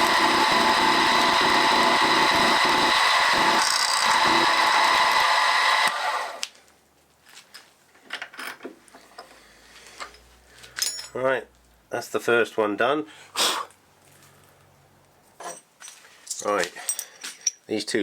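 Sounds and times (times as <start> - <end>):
machine winding down: 0.0 - 6.4
milling machine whine: 0.0 - 6.4.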